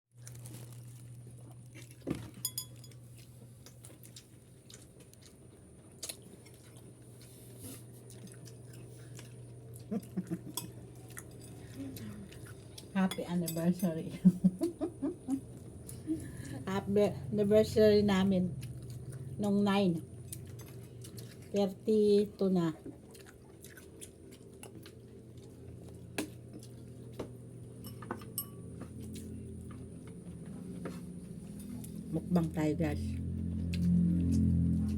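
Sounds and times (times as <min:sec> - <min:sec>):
quiet chewing: 0:00.2 - 0:13.7, 0:14.6 - 0:16.6, 0:18.4 - 0:19.4, 0:20.0 - 0:34.9
steady low hum: 0:00.2 - 0:34.9
utensils clinking on dishes: 0:02.4 - 0:03.0, 0:27.8 - 0:29.0.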